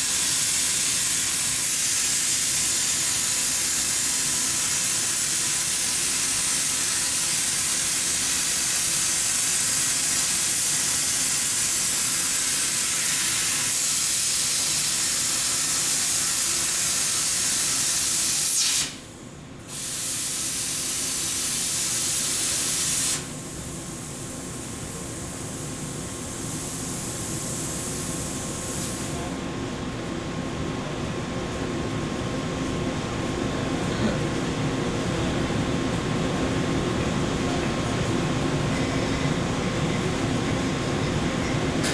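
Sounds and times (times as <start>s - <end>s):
welding hiss: 0.0s - 19.1s, 19.7s - 29.3s
steady background noise: 23.4s - 41.9s.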